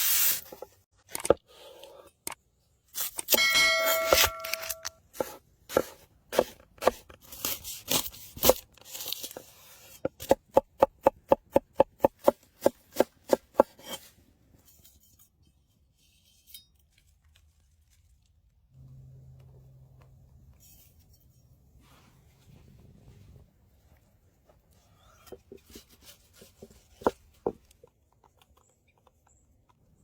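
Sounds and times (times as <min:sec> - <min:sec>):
ringing clatter: 0:03.4 - 0:04.9
knife chopping on cutting board: 0:10.2 - 0:14.0.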